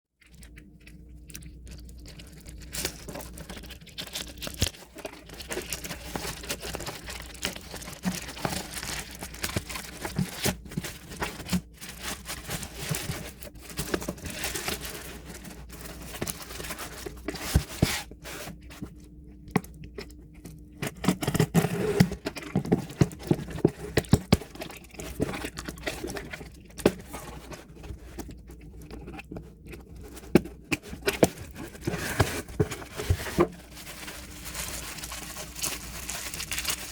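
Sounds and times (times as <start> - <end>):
packaging being torn and crinkled: 2.2 - 18.1, 30.1 - 36.9.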